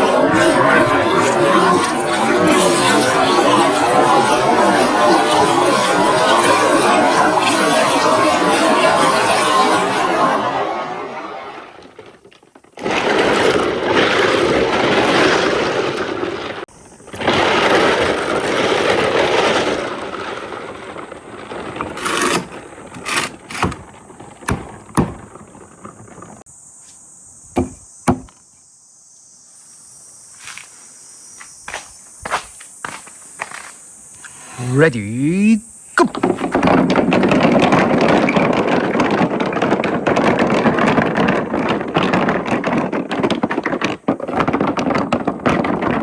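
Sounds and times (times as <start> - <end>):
marbles clacking together: 0.0 - 16.6, 17.2 - 25.2
marbles rolling on a track: 0.0 - 26.2, 34.4 - 46.0.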